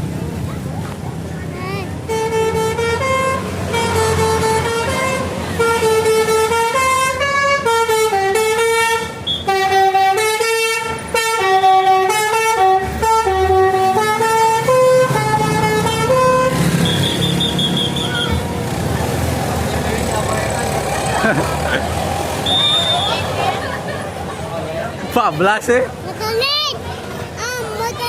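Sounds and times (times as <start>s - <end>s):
low engine rumble: 0.0s - 25.2s
multi-tone bus air horn tune: 2.0s - 18.5s, 22.4s - 23.4s.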